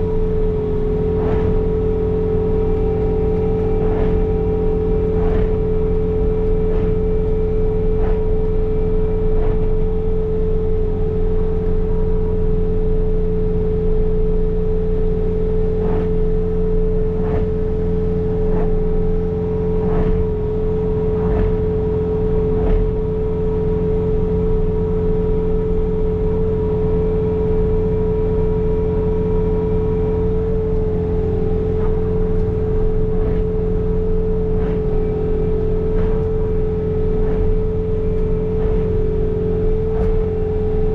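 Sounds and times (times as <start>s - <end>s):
engine drone: 0.0s - 40.9s
snow blower whine: 0.0s - 40.9s.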